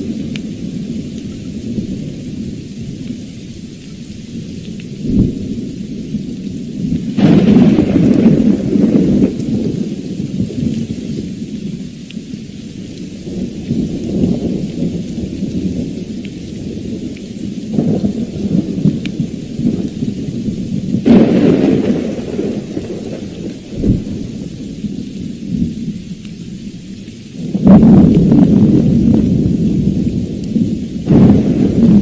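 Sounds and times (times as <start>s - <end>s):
steady rain: 0.0s - 32.0s
rolling thunder: 4.4s - 11.8s, 12.9s - 26.0s, 27.4s - 32.0s.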